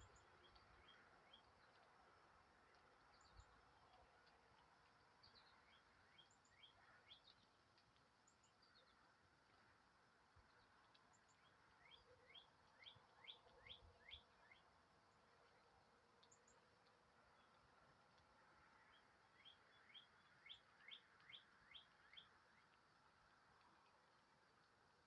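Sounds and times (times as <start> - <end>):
faint background hiss: 0.0 - 25.0
small bird chirping: 10.5 - 14.7, 18.8 - 22.7.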